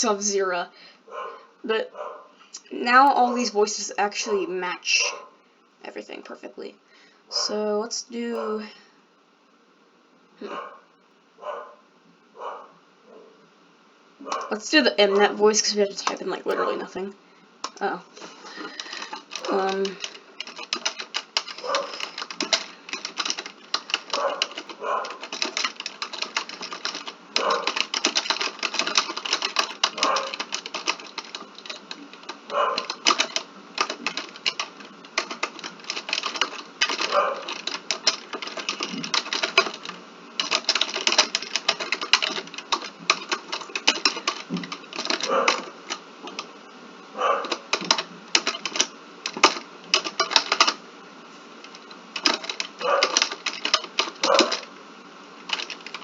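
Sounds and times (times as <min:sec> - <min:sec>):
rapid typing on keyboard: 0:14.3 - 0:16.9, 0:17.6 - 0:46.6, 0:47.3 - 0:50.8, 0:51.6 - 0:54.7, 0:55.4 - 0:56.0.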